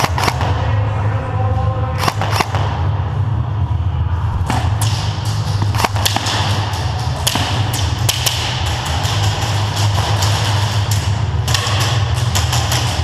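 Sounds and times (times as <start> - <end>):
low rumble: 0.0 - 13.0
airsoft gun shots: 2.0 - 2.7, 4.5 - 13.0.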